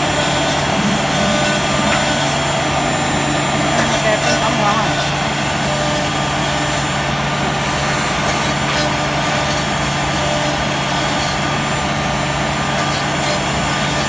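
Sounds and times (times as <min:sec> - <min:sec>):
router spindle cutting wood: 0:00.0 - 0:14.0.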